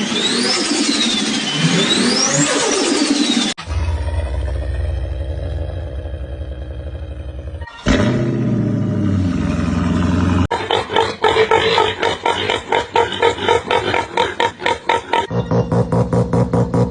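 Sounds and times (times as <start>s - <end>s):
animal growl: 3.7s - 15.3s.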